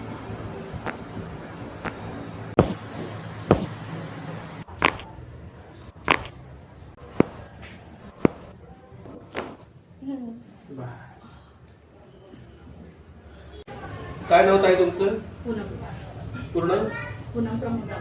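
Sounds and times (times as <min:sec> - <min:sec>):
sharp strikes on the body: 0:02.6 - 0:02.8, 0:03.5 - 0:03.7, 0:04.8 - 0:05.1, 0:06.1 - 0:06.3.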